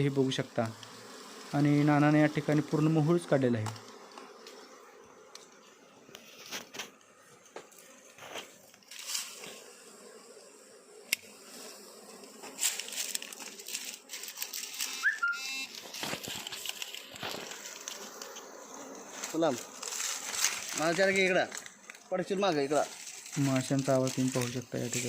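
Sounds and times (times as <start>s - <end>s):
honeycomb rustling and crackling: 0.2s - 25.0s
short rising whistle: 15.0s - 15.6s.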